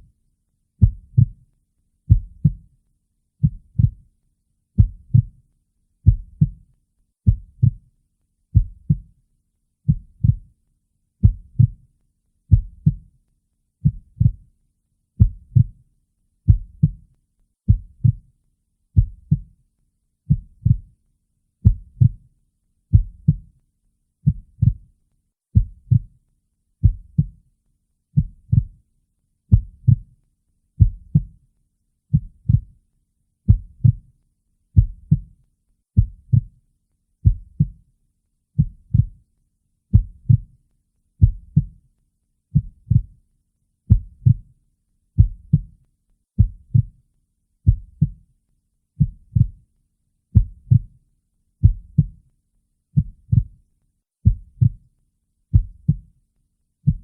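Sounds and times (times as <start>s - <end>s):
slow heartbeat: 0.8s - 1.4s, 2.1s - 2.7s, 3.4s - 4.0s, 4.8s - 5.4s, 6.0s - 6.6s, 7.3s - 7.8s, 8.5s - 9.1s, 9.9s - 10.5s, 11.2s - 11.8s, 12.5s - 13.1s, 13.8s - 14.5s, 15.2s - 15.8s, 16.5s - 17.0s, 17.7s - 18.3s, 19.0s - 19.5s, 20.3s - 20.9s, 21.6s - 22.2s, 22.9s - 23.5s, 24.2s - 24.9s, 25.6s - 26.1s, 26.8s - 27.4s, 28.2s - 28.8s, 29.5s - 30.1s, 30.8s - 31.3s, 32.1s - 32.8s, 33.5s - 34.1s, 34.8s - 35.3s, 36.0s - 36.6s, 37.2s - 37.8s, 38.6s - 39.2s, 39.9s - 40.5s, 41.2s - 41.8s, 42.6s - 43.1s, 43.9s - 44.5s, 45.2s - 45.7s, 46.4s - 47.0s, 47.6s - 48.2s, 49.0s - 49.6s, 50.3s - 50.9s, 51.6s - 52.2s, 53.0s - 53.6s, 54.2s - 54.8s, 55.5s - 56.1s.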